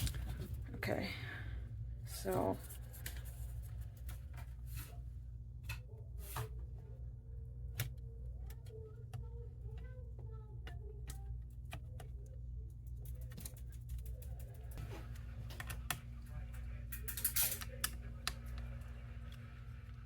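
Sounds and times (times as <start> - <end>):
steady low hum: 0.0 - 20.0
small parts clicking and tapping: 7.7 - 14.8, 16.9 - 18.7.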